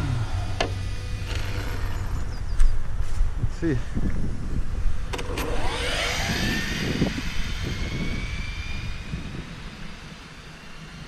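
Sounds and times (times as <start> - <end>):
rc car electric motor whining: 0.4 - 2.5, 5.0 - 11.0.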